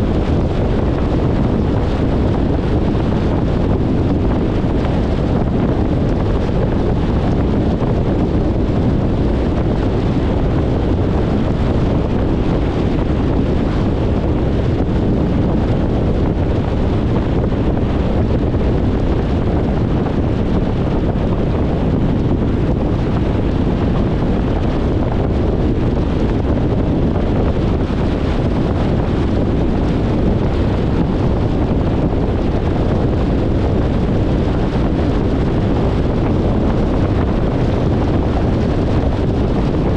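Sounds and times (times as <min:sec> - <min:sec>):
wind noise: 0:00.0 - 0:39.9.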